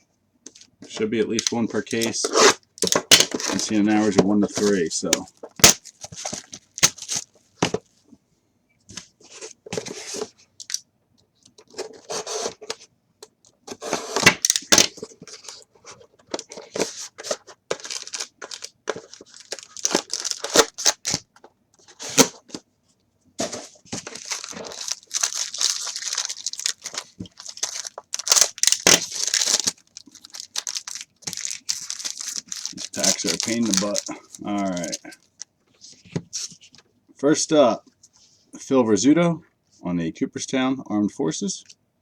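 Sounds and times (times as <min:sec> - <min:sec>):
card wrappers tearing and crinkling: 0:01.2 - 0:07.3, 0:13.7 - 0:15.6, 0:16.3 - 0:21.2, 0:21.8 - 0:22.5, 0:23.5 - 0:35.4.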